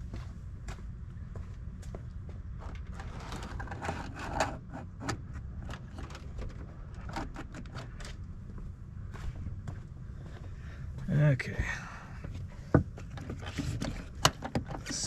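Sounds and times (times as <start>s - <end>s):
steady low hum: 0.0s - 15.0s
cable scraping and rustling: 2.6s - 8.2s, 13.0s - 15.0s.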